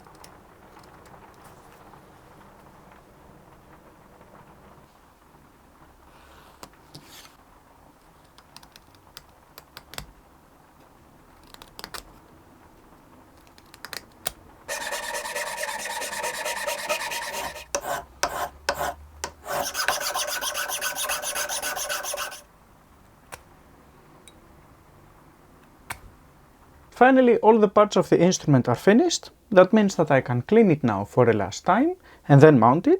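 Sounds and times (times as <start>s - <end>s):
hand tools tapping on wood: 14.7s - 22.4s
wood being filed: 14.7s - 22.4s.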